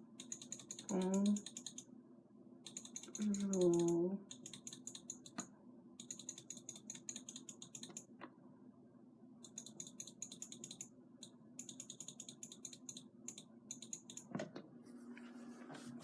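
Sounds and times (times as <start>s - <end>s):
faint keyboard typing: 0.2s - 1.9s, 2.6s - 8.3s, 9.4s - 14.6s.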